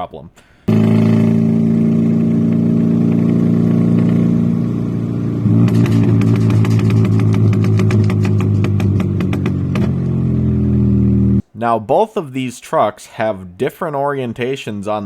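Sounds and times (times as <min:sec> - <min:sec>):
exhaust popping: 0:00.3 - 0:11.4
truck engine idling roughly: 0:05.5 - 0:10.3.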